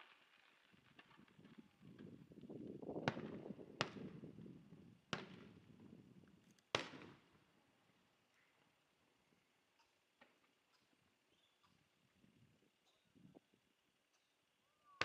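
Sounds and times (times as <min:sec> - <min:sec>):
fireworks bangs: 0:00.0 - 0:05.8.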